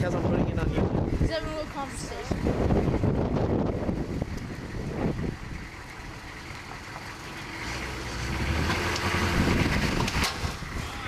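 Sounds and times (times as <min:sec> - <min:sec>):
engine rumble: 0:00.0 - 0:11.0
sharp crack: 0:08.6 - 0:10.7.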